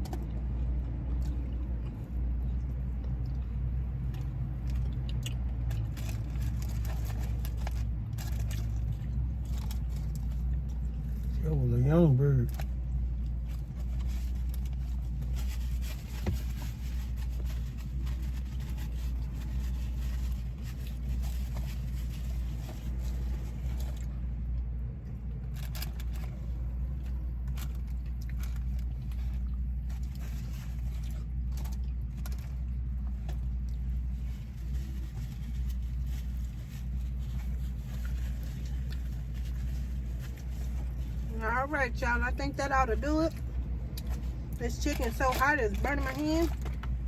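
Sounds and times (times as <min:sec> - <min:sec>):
car engine rumble: 0:00.0 - 0:47.0
small clicks and rustles: 0:12.5 - 0:41.3.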